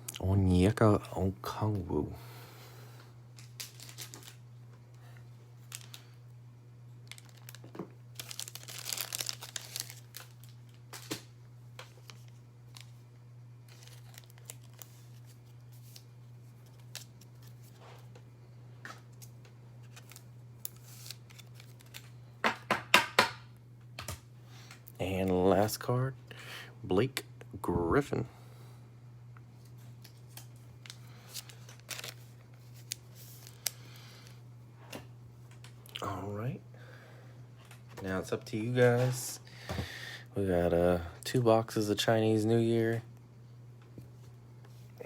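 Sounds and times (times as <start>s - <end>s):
plastic sleeves crinkling: 3.3s - 4.4s, 5.0s - 6.2s, 7.0s - 18.2s, 18.9s - 22.2s, 29.6s - 34.4s.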